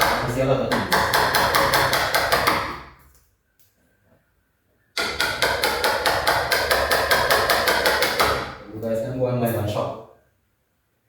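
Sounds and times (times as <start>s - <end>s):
hammer striking a chisel: 0.0s - 2.9s, 5.0s - 8.6s.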